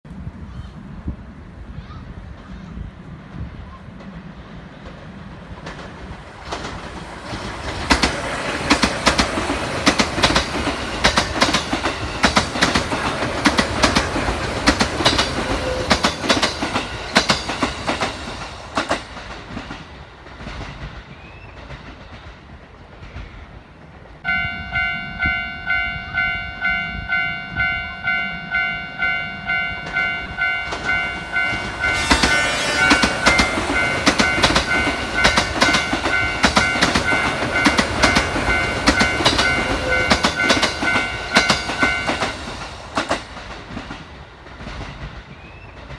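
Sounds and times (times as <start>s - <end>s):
train wheels clacking over rail joints: 4.8s - 23.3s, 29.8s - 45.9s
electronic warning bell ringing: 24.3s - 42.4s.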